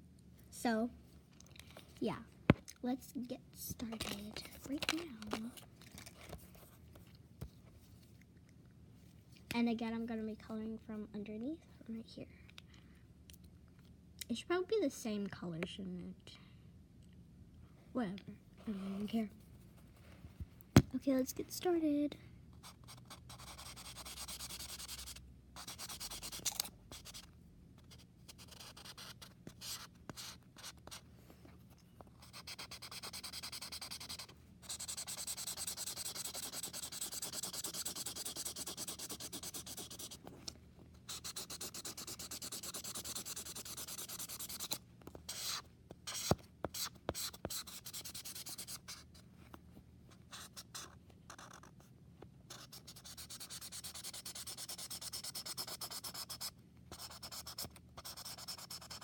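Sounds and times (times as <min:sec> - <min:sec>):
marker scribbling on paper: 0:22.6 - 0:31.0, 0:32.2 - 0:40.2, 0:41.1 - 0:49.2, 0:50.3 - 0:51.7, 0:52.5 - 0:59.0.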